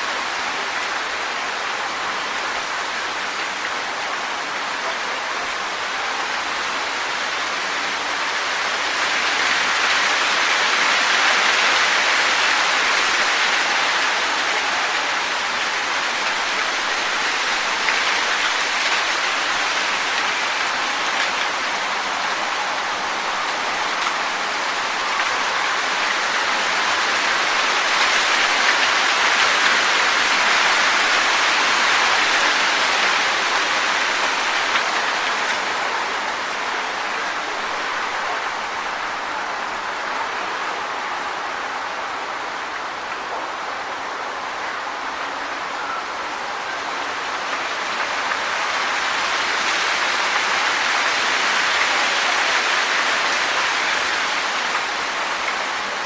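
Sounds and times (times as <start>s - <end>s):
wind rustling tree leaves: 0.0s - 56.0s.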